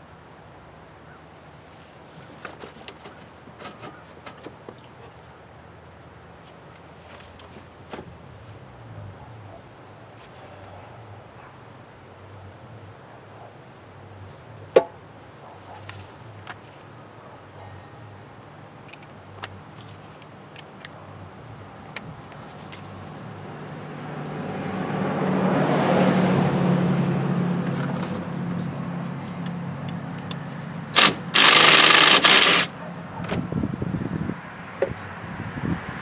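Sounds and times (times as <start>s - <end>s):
vehicle passing: 23.1s - 31.3s.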